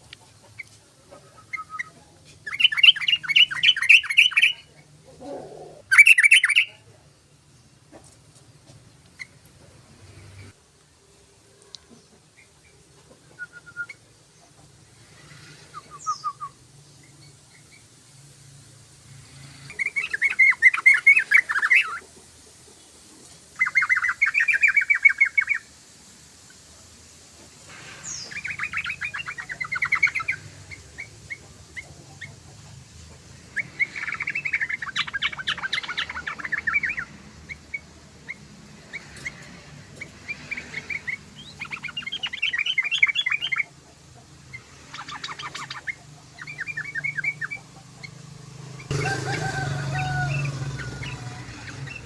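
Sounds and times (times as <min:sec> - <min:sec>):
bird singing bubbling chatter: 0:28.0 - 0:32.5, 0:33.5 - 0:39.4, 0:44.5 - 0:48.2.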